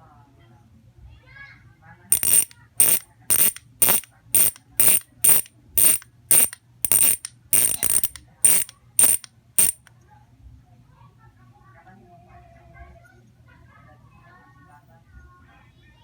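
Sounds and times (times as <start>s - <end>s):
bicycle freewheel ratchet buzzing: 2.1s - 9.8s.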